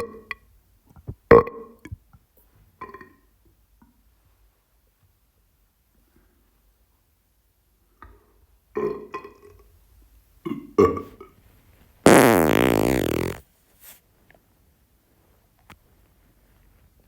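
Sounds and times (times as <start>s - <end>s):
loud drawn-out fart: 12.1s - 13.4s
person burping: 12.1s - 13.4s.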